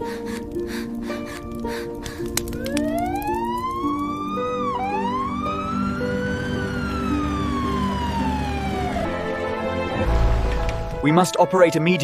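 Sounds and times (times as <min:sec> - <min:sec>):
soft background music: 0:00.0 - 0:12.0
ambulance siren wailing: 0:02.5 - 0:10.0.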